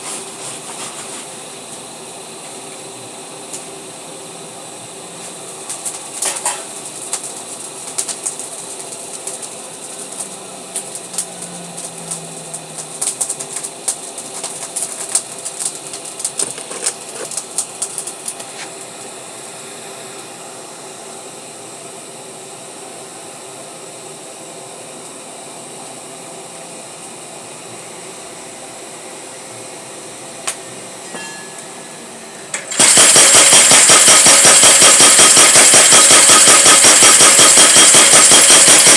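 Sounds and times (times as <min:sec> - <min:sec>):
machine hum: 0:05.4 - 0:19.8
power hammer pounding: 0:32.7 - 0:38.9.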